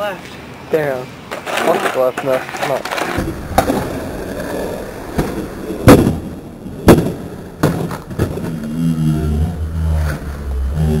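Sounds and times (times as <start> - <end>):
sharp knocks: 5.1 - 8.7.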